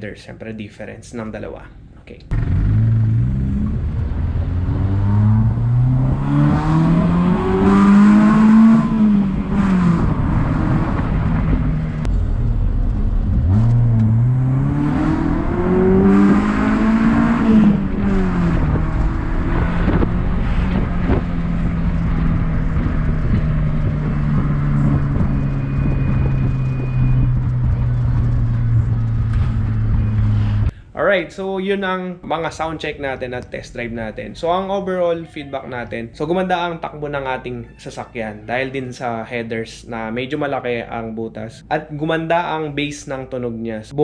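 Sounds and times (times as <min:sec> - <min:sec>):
car engine accelerating hard: 0:02.3 - 0:30.7
deep round exhaust note: 0:02.3 - 0:30.7.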